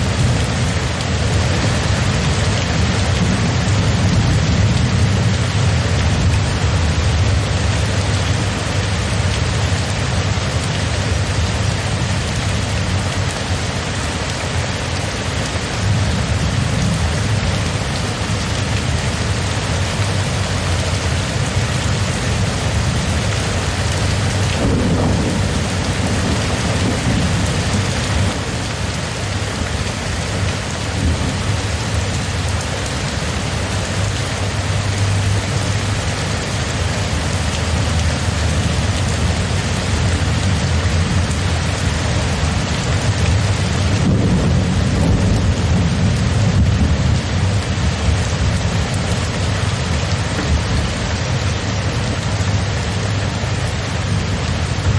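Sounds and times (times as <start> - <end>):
steady rainfall: 0.0 - 54.9
low thunder rumble: 24.1 - 29.0, 42.2 - 51.1.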